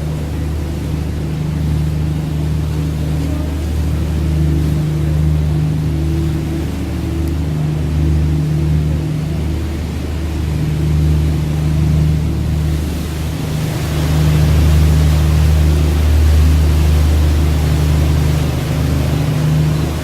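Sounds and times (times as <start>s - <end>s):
boat engine droning: 0.0s - 20.0s
water and wind hissing: 0.0s - 20.0s.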